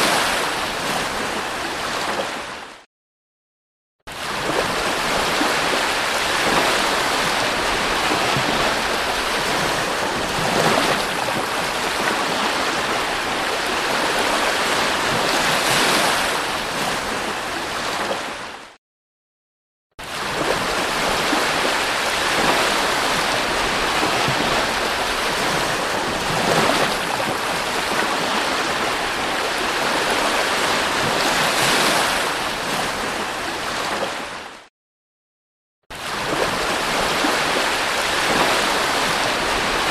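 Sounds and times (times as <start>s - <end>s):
sea waves washing onto beach: 0.0s - 2.6s, 4.2s - 18.6s, 20.0s - 34.5s, 36.0s - 39.9s.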